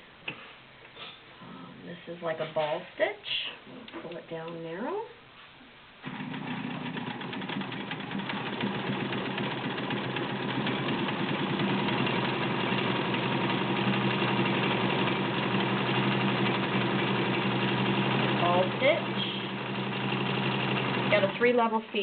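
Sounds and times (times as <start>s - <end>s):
sewing machine running: 6.0s - 21.7s.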